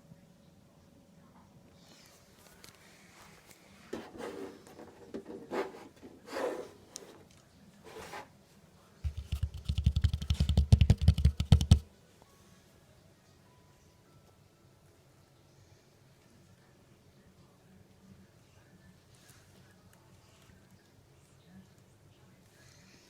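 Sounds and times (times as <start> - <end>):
scrapes and knocks: 3.9 - 7.3, 7.9 - 8.3, 9.1 - 11.8.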